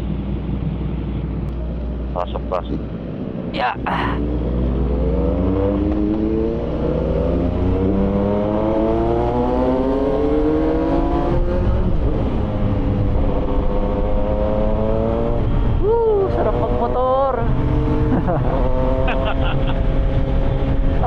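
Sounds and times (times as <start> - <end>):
motorcycle engine accelerating: 4.2 - 21.0.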